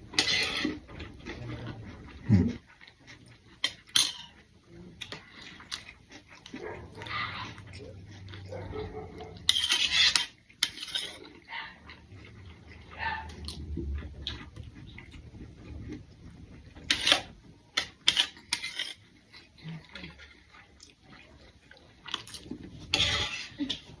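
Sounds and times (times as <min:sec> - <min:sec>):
cutlery scraping on plates: 0:00.1 - 0:01.2, 0:03.6 - 0:04.4, 0:08.9 - 0:11.4, 0:16.8 - 0:19.0, 0:22.2 - 0:24.0
chewing mouth noises: 0:05.0 - 0:09.6.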